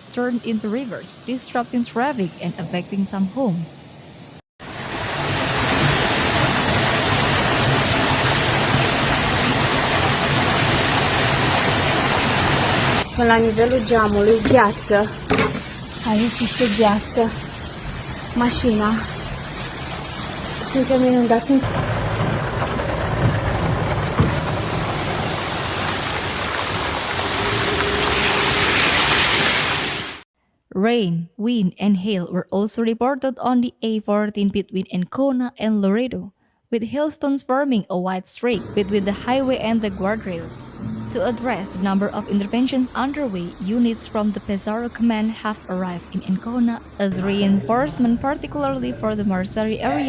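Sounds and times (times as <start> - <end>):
torrential rain pouring: 4.6 - 30.2, 47.2 - 50.0.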